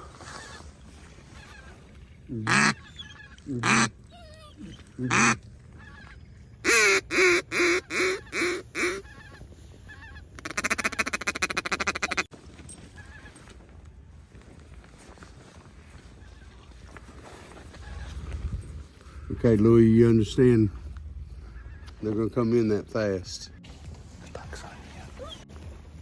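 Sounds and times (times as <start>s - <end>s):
duck call quacking: 2.4s - 3.9s, 5.0s - 12.3s
duck call rattling chuckle: 5.1s - 5.4s, 6.7s - 9.1s, 10.0s - 12.3s.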